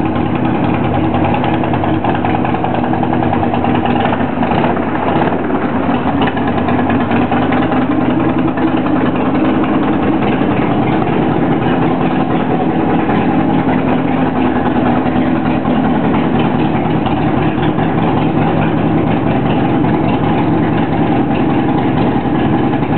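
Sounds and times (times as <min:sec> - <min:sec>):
motorcycle engine idling: 0:00.0 - 0:22.9.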